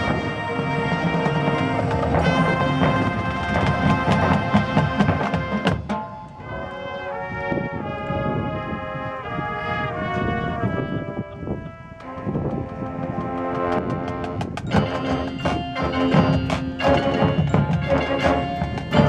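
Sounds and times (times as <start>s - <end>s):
brass sustained chords: 0.0s - 19.0s
marching band playing: 0.0s - 19.0s.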